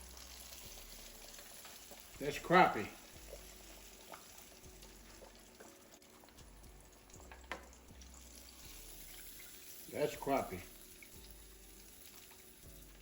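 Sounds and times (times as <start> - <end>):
fish frying in hot oil: 0.0 - 13.0.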